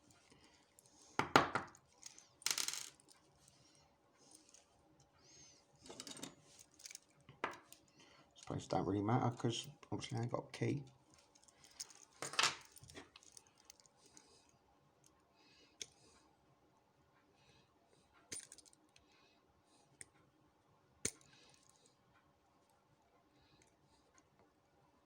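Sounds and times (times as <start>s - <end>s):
metal parts clicking on hard surface: 2.0s - 3.2s.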